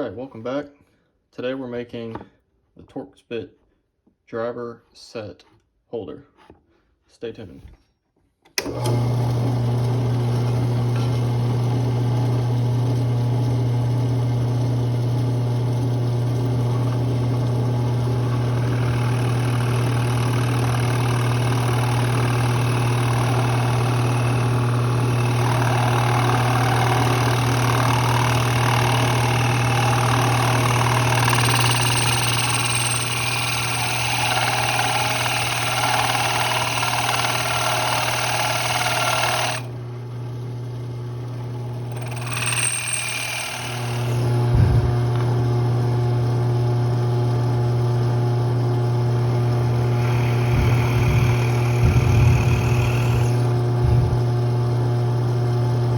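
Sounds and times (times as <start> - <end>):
tool cutting wood: 8.5 - 12.1, 14.8 - 39.8, 41.4 - 45.5, 48.9 - 54.4
power tool motor humming: 14.8 - 39.8, 41.4 - 45.5, 48.9 - 54.4.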